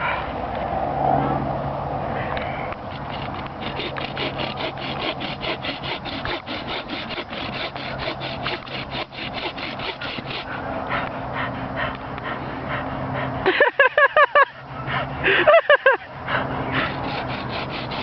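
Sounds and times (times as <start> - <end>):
hand saw cutting wood: 2.8 - 10.7, 15.3 - 18.0.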